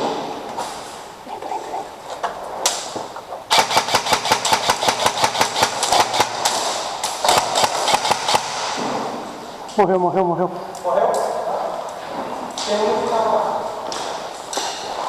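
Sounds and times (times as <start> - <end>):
airsoft guns firing: 3.5 - 9.5.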